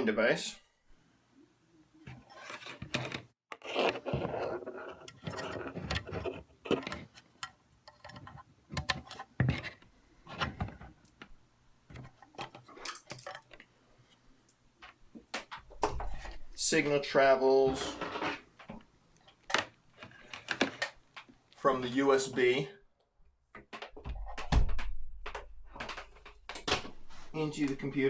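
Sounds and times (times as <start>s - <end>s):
cables rubbing and scraping: 2.0s - 7.2s.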